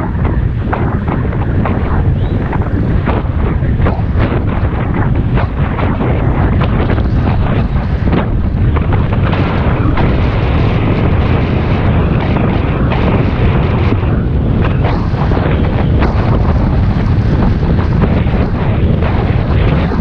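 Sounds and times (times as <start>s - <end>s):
wind buffeting on microphone: 0.0s - 20.0s.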